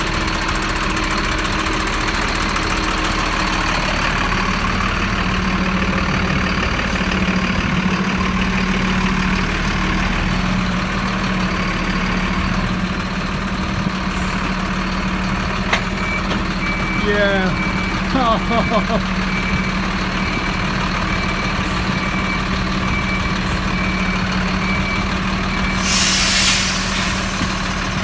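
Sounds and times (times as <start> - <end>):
truck engine idling: 0.0 - 28.0.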